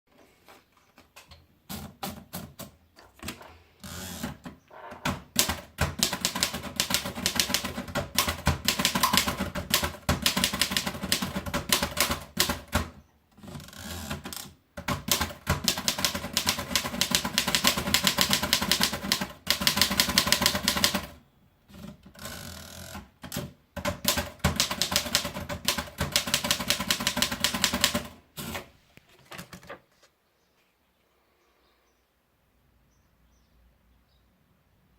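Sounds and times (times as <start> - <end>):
typewriter key strikes: 5.1 - 12.8, 23.2 - 28.6.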